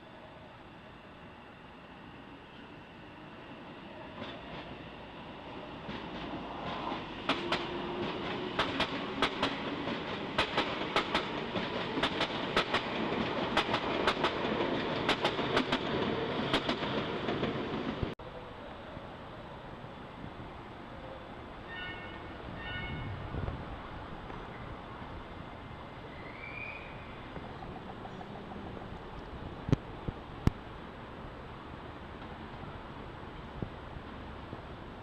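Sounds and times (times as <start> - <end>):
train rumble: 0.0 - 35.0
train wheels clicking over rail joints: 5.8 - 18.2.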